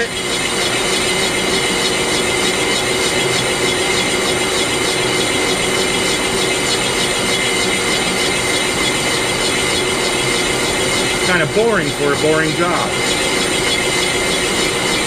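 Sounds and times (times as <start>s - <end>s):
metal lathe cutting: 0.0s - 15.0s
steady whine: 10.4s - 15.0s.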